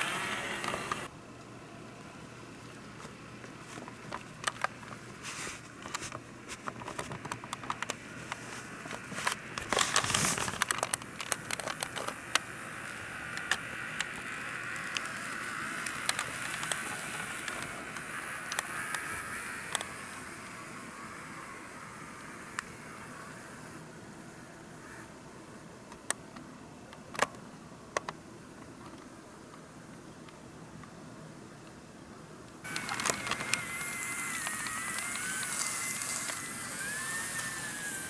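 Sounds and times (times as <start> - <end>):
model train wheels clicking: 0.0 - 1.1, 6.7 - 23.7, 32.7 - 38.0
motor hum: 0.0 - 25.2, 32.6 - 38.0.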